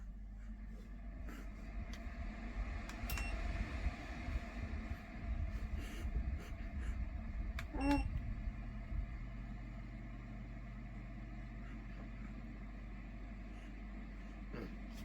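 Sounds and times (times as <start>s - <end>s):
low hum: 0.0s - 15.0s
heater control beep: 2.9s - 3.6s, 7.6s - 8.3s.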